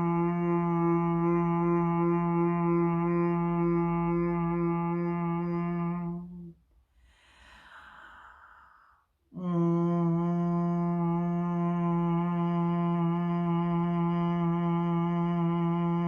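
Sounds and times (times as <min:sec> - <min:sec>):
woman humming a low note: 0:00.0 - 0:06.6, 0:09.3 - 0:16.0
woman breathing in: 0:06.9 - 0:09.2.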